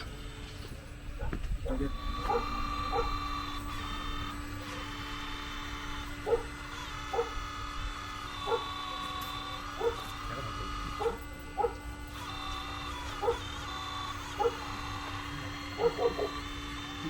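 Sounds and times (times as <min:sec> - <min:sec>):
hydraulic pump whining: 0:00.0 - 0:17.0.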